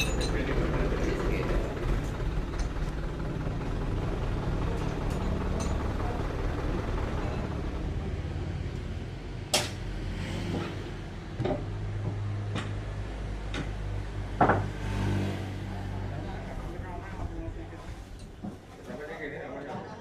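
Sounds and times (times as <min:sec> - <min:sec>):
low engine hum: 0:00.0 - 0:18.9
sharp knocks: 0:13.5 - 0:14.9.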